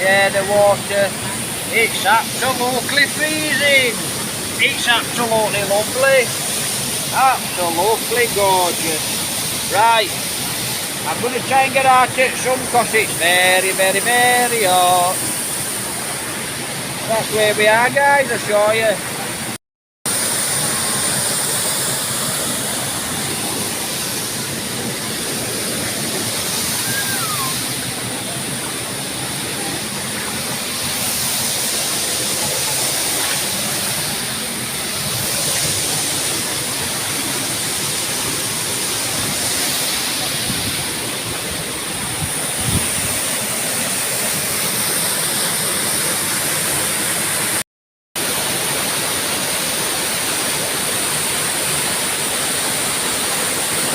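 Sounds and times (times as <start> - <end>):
waterfall rushing: 0.0 - 47.6, 48.2 - 53.9.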